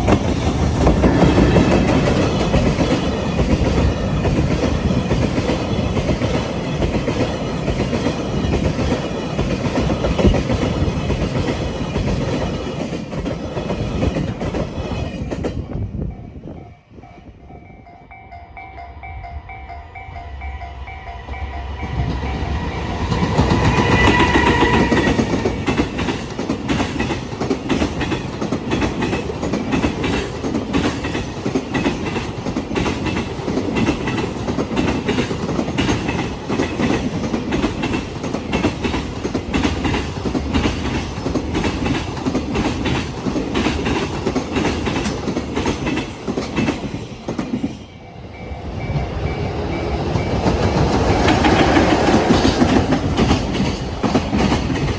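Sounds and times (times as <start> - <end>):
train wheels clattering on rail joints: 0.0 - 15.9, 21.9 - 47.8, 49.0 - 54.9
crossing warning bell ringing: 16.1 - 26.4, 47.4 - 53.8.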